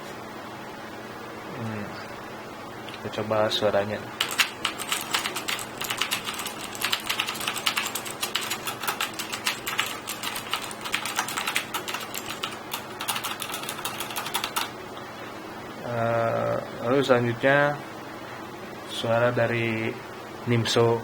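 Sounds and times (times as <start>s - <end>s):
clicky mechanical keyboard typing: 4.2s - 14.7s.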